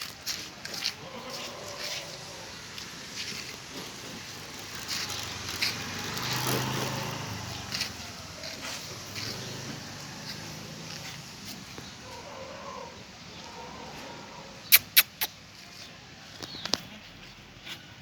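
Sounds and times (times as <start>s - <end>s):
motor vehicle passing: 0.0s - 15.1s.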